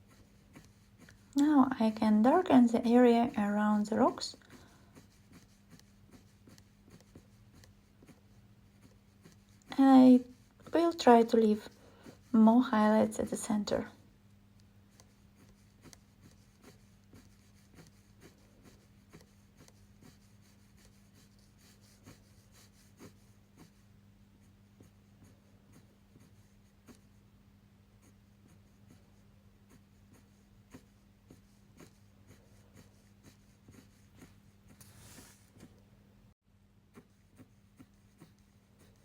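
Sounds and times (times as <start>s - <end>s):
pen scratching on paper: 0.0s - 1.5s, 2.1s - 13.0s, 14.9s - 23.8s, 24.7s - 27.2s, 28.0s - 35.7s, 36.9s - 39.0s
low steady hum: 0.0s - 22.5s.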